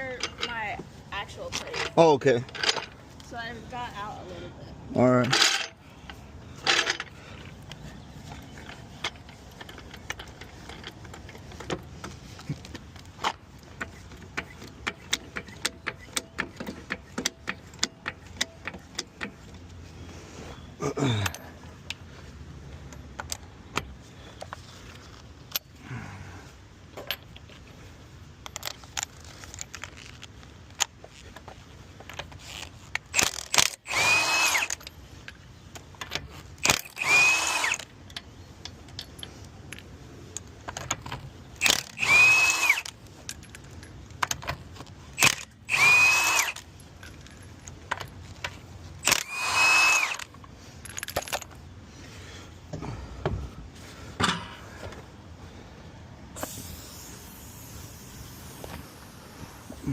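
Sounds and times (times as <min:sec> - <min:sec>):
metallic clicks of nuts and tools: 0:00.0 - 0:00.6, 0:01.5 - 0:03.0, 0:05.2 - 0:19.6, 0:22.7 - 0:25.8, 0:28.3 - 0:51.6
power wrench whining: 0:13.7 - 0:19.5, 0:32.4 - 0:34.9, 0:36.3 - 0:38.0, 0:41.6 - 0:43.7, 0:45.2 - 0:47.4, 0:48.4 - 0:51.5, 0:56.4 - 0:59.9.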